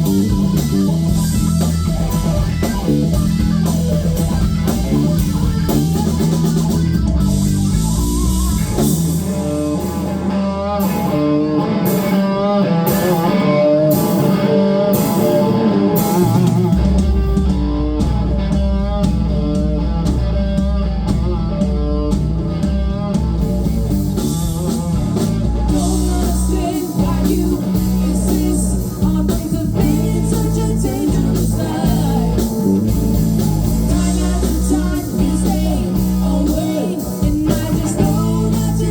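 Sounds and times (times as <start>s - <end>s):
bass guitar: 0.0s - 38.9s
drums: 0.0s - 38.9s
electric guitar solo: 0.0s - 38.9s.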